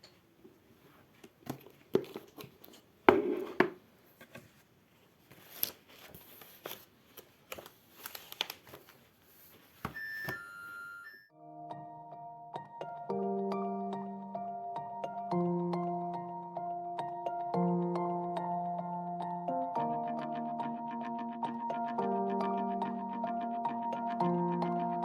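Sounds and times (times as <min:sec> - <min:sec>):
soft rustling: 0:04.0 - 0:10.0.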